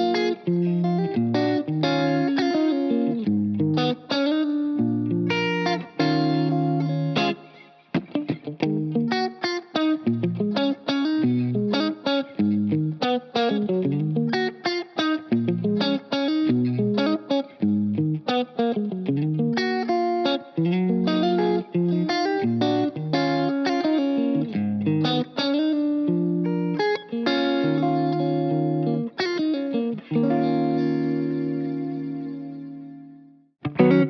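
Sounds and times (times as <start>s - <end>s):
electric guitar riff: 0.0s - 34.0s.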